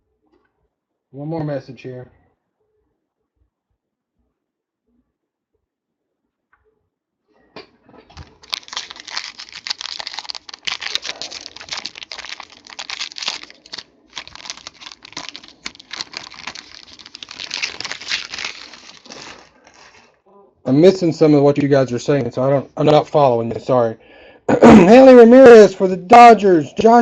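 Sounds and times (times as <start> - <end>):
card pack wrapping crinkling: 8.2 - 20.1.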